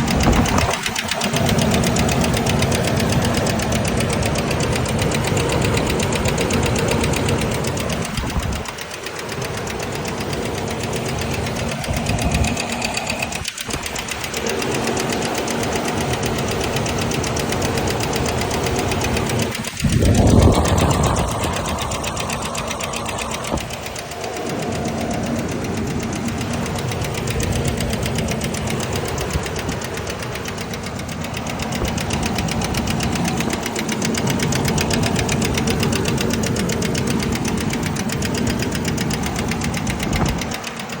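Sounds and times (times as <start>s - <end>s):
engine running: 0.0s - 41.0s
rapid engine knocking: 0.0s - 41.0s.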